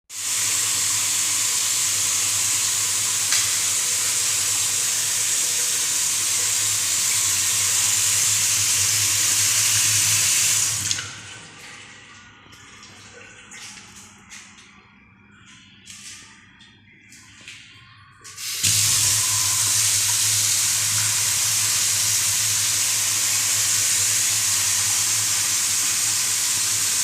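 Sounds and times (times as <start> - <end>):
tap water running into sink: 0.1 - 11.5, 18.3 - 27.0
water trickling and dripping: 3.1 - 4.9, 9.7 - 27.0.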